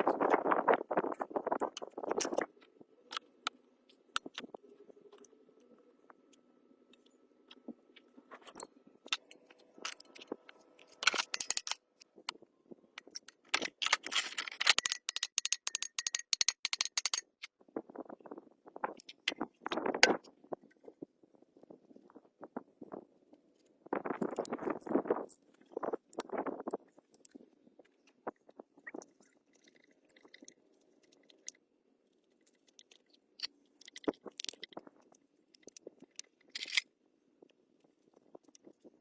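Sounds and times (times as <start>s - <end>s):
faint steady hum: 0.0s - 14.5s.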